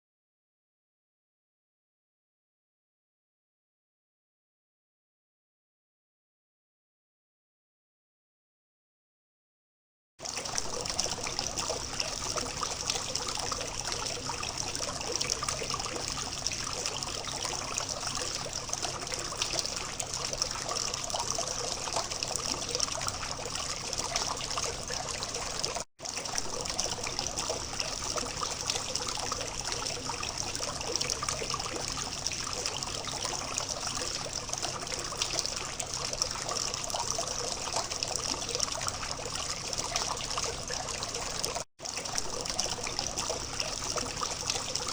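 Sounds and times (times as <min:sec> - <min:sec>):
fountain water trickling: 0:10.2 - 0:44.9.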